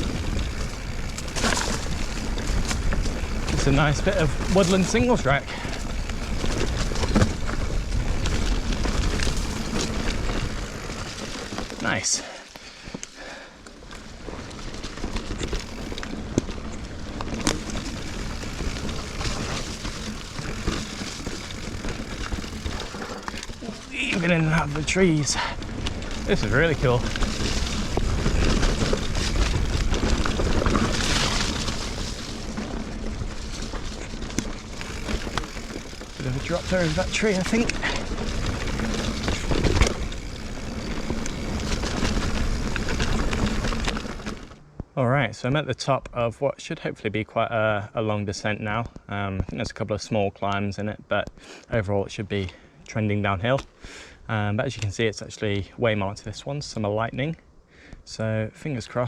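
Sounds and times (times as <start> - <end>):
bike knocking and rattling: 0.0 - 45.0
bike tyres on dirt trail: 0.0 - 46.0, 47.1 - 59.0.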